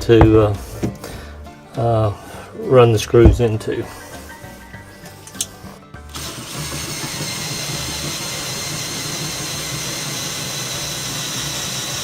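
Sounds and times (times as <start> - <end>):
small motor running: 3.4 - 12.0.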